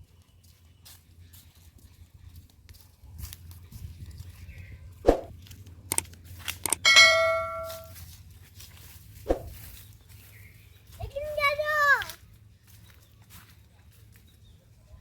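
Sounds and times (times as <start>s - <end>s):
light clicks: 5.6s - 6.8s
bright bell-like ding: 6.8s - 7.9s.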